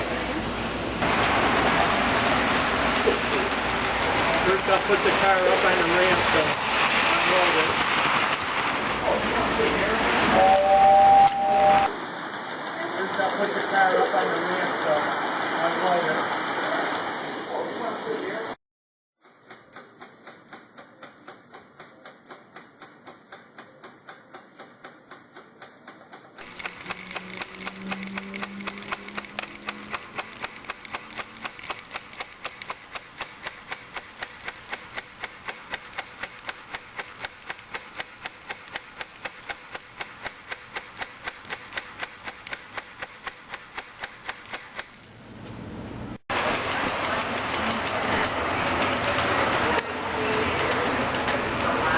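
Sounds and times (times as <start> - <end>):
model train clicking: 1.0 - 18.1, 19.2 - 45.1, 46.3 - 51.9
low hum: 10.2 - 12.4.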